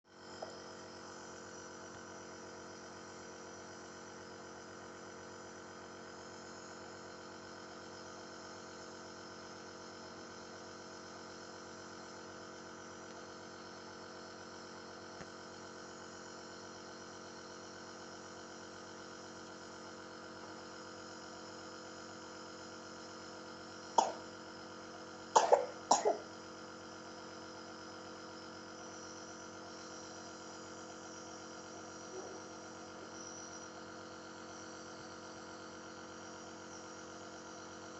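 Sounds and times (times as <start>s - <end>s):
nebulizer machine humming: 0.2s - 13.9s, 22.6s - 26.7s, 27.4s - 34.8s
child coughing: 24.0s - 24.2s, 25.4s - 26.3s.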